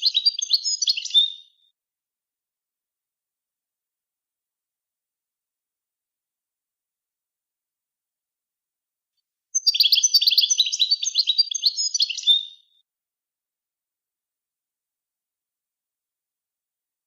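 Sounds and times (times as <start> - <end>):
songbird twittering song: 0.0 - 1.7, 9.6 - 12.8.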